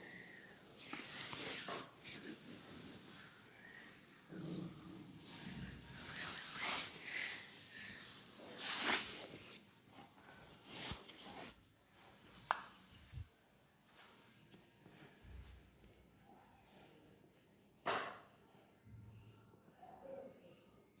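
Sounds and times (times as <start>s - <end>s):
hands rubbing over skin: 0.3s - 3.9s, 5.2s - 9.6s.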